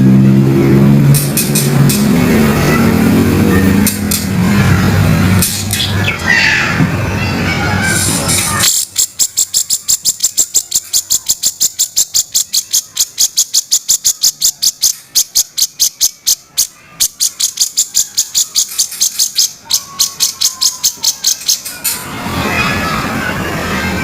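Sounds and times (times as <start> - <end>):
bird harsh rattling call: 8.0 - 22.0.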